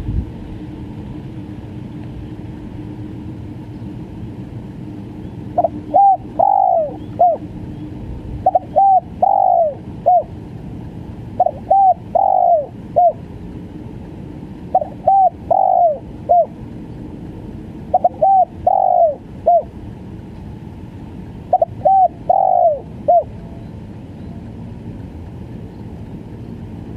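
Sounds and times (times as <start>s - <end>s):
dove cooing: 5.4s - 10.4s, 11.3s - 13.3s, 14.7s - 16.6s, 17.8s - 19.8s, 21.4s - 23.7s.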